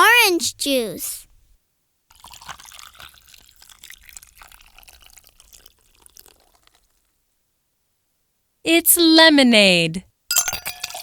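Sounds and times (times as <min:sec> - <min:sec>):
liquid pouring and splashing: 0:02.1 - 0:07.2.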